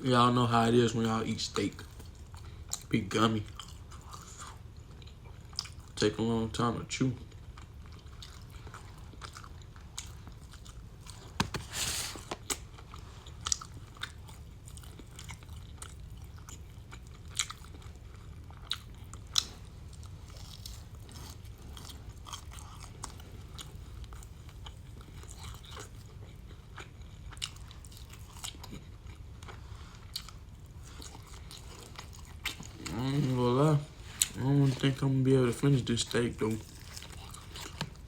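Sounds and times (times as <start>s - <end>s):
person chewing: 3.5s - 6.0s, 7.2s - 35.0s, 36.4s - 38.0s.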